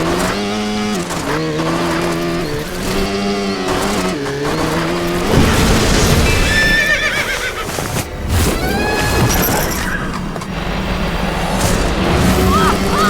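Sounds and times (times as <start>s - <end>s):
horse whinny: 6.4s - 7.8s.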